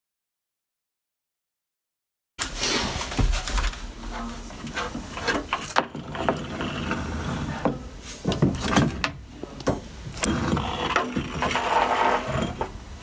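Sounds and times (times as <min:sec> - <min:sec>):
scraping and rubbing: 0:02.4 - 0:09.1, 0:10.1 - 0:12.9.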